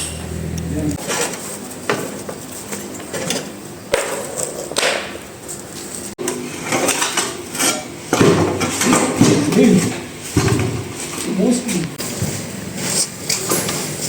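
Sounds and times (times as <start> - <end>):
tools knocking and clattering: 6.2 - 10.9.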